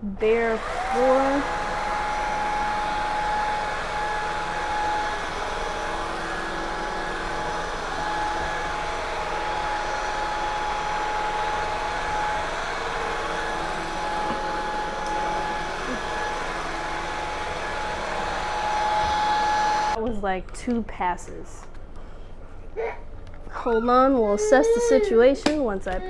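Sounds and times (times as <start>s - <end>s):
stick vacuum running: 0.2s - 20.0s.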